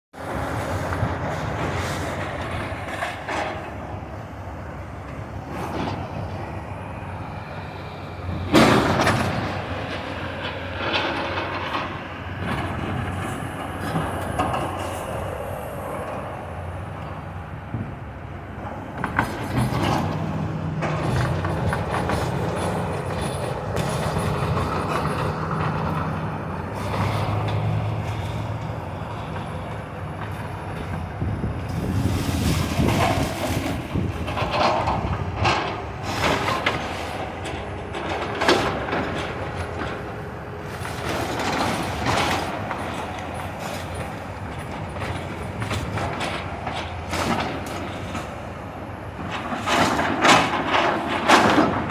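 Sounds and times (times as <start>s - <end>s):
diesel engine under load: 0.2s - 51.9s
debris clanking and grinding: 49.2s - 51.9s.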